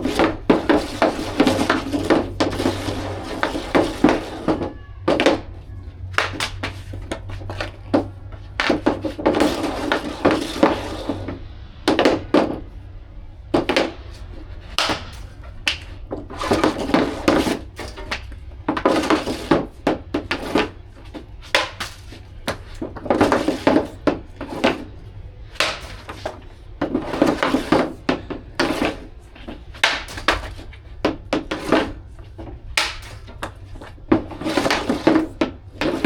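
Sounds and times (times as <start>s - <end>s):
skates and stick scraping ice: 0.0s - 36.0s
steady low rumble: 5.4s - 23.1s.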